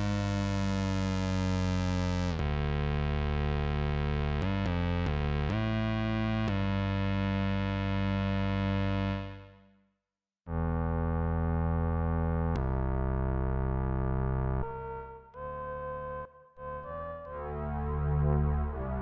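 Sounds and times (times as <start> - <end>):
synthesizer playing long held notes: 14.6 - 19.0.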